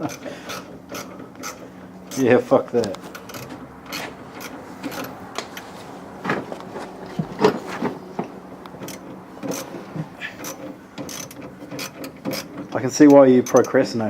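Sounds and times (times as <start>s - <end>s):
hand tools clicking and scraping: 0.0s - 14.0s.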